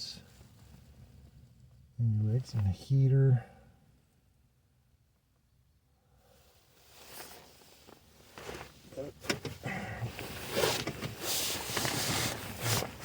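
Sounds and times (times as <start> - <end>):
rustling and scraping of wiring: 6.8 - 13.0.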